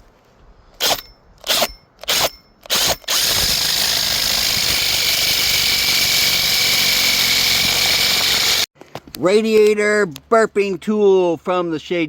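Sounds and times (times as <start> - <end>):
power drill whining: 0.8 - 8.7.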